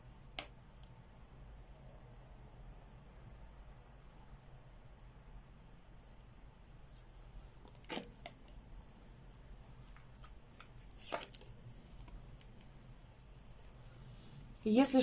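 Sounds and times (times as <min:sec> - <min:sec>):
cards flicking and slapping: 0:07.6 - 0:08.6, 0:09.9 - 0:12.6.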